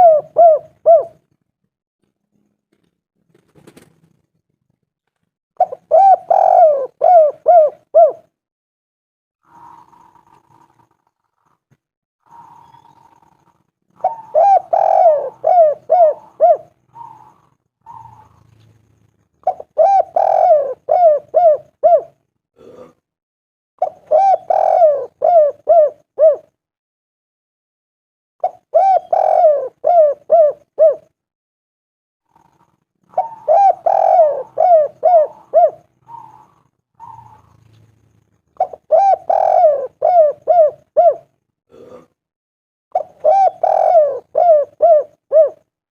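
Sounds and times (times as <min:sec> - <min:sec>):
dove cooing: 0:00.0 - 0:01.3, 0:05.6 - 0:08.3, 0:09.4 - 0:11.6, 0:12.2 - 0:18.8, 0:19.4 - 0:22.9, 0:23.8 - 0:26.5, 0:28.4 - 0:31.2, 0:32.3 - 0:42.0, 0:42.9 - 0:45.7.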